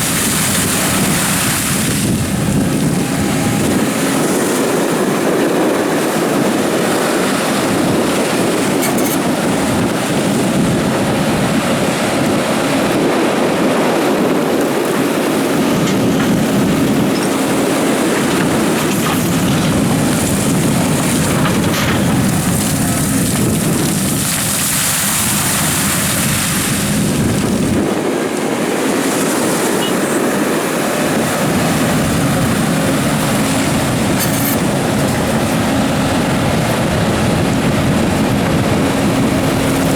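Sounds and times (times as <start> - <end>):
excavator diesel engine: 2.1 - 23.9, 29.7 - 39.9
bucket digging gravel: 8.7 - 9.2, 33.0 - 34.6
light metal clanks: 8.8 - 9.3.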